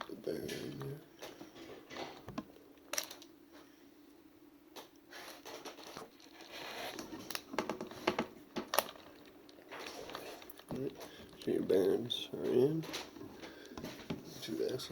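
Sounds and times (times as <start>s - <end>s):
plastic parts scraping: 5.2s - 11.8s.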